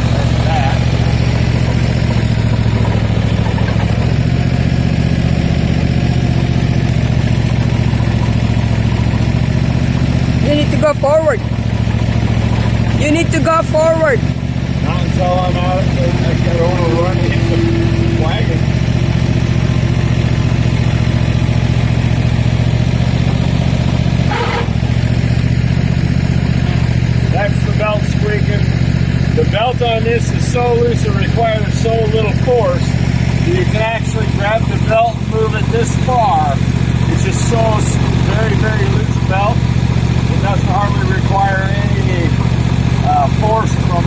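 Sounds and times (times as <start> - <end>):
mower engine running: 0.0 - 44.0
belt squeal: 24.2 - 24.9.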